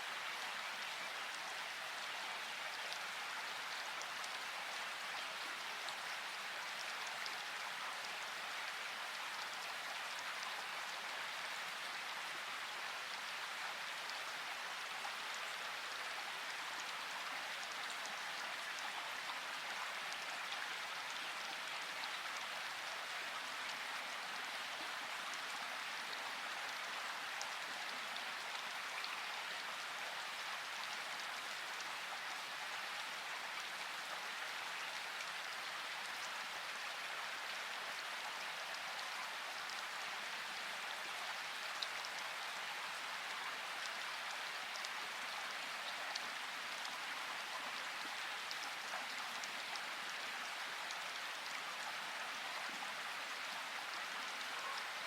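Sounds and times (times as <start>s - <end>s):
steady rain: 0.0s - 55.0s.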